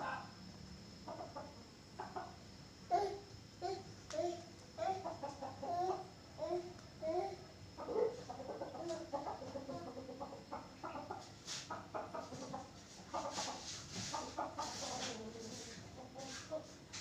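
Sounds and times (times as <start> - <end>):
chickens clucking: 1.0 - 2.6, 4.7 - 17.0.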